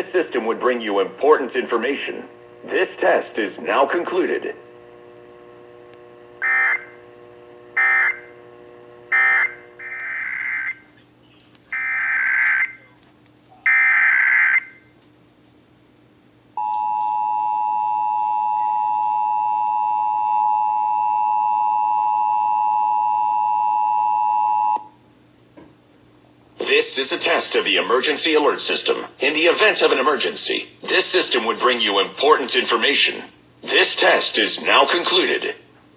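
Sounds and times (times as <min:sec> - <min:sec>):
two-tone attention signal: 0:06.4 - 0:07.0, 0:07.8 - 0:08.3, 0:09.1 - 0:10.9, 0:16.6 - 0:24.8
buzzing data bursts: 0:06.4 - 0:08.4, 0:09.1 - 0:10.8.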